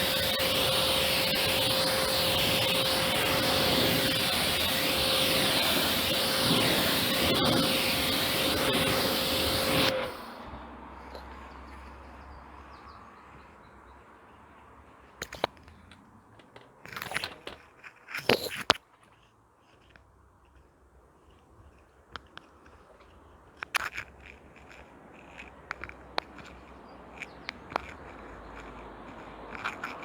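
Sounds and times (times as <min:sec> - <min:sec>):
pressure washer spraying: 0:00.0 - 0:10.4
sharp clicks and knocks: 0:15.2 - 0:20.6, 0:22.1 - 0:30.0.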